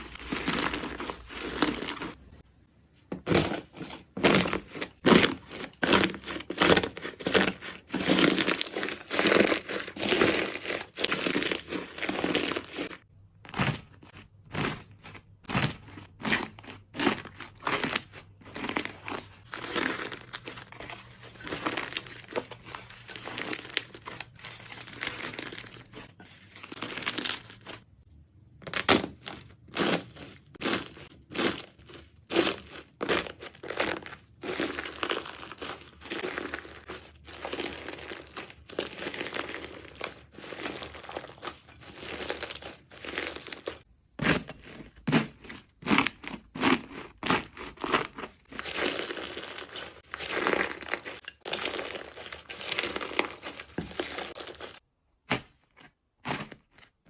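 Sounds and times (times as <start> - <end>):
slime squishing and popping: 28.6 - 55.6.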